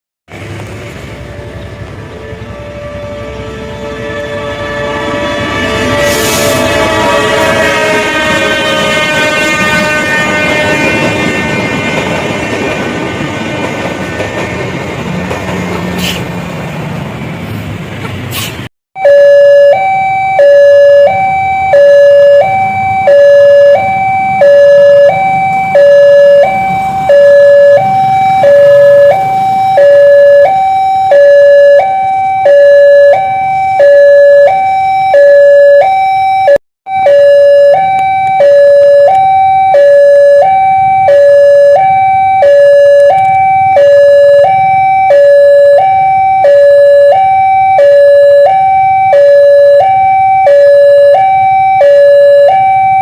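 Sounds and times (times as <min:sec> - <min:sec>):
electronic two-tone siren: 0:01.1 - 0:12.8, 0:19.0 - 0:53.0.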